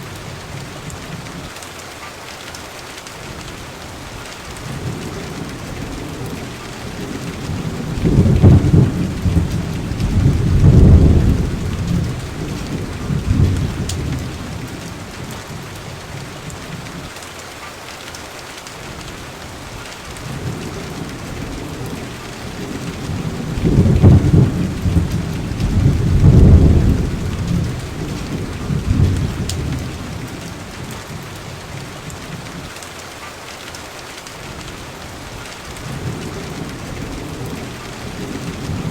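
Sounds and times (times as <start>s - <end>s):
steady rain falling: 0.0s - 38.9s
rolling thunder: 4.6s - 16.5s, 20.2s - 32.6s, 35.8s - 38.9s.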